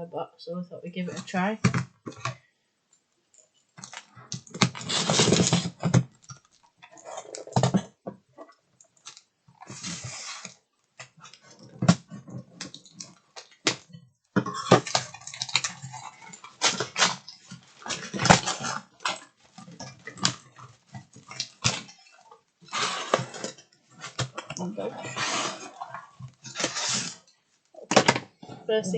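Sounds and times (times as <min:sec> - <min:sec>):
packaging rustling: 0:03.8 - 0:07.8.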